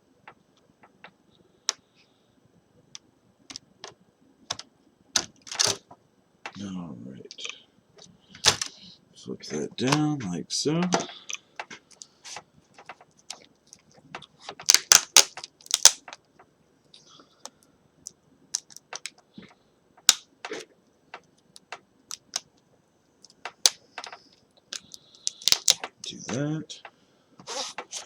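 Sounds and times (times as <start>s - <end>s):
hands clicking laptop plastic parts: 8.4s - 8.7s, 12.8s - 16.3s, 18.6s - 19.2s, 20.0s - 20.2s, 23.2s - 26.0s.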